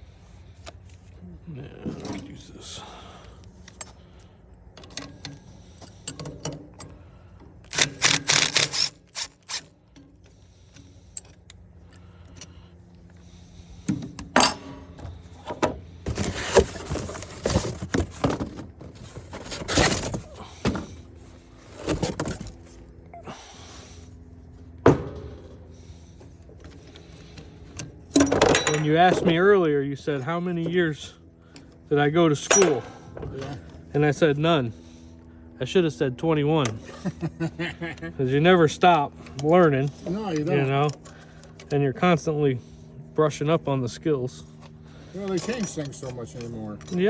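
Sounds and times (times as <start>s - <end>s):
hand tools clicking and scraping: 1.8s - 24.0s, 25.6s - 29.5s, 30.2s - 33.8s, 44.5s - 47.0s.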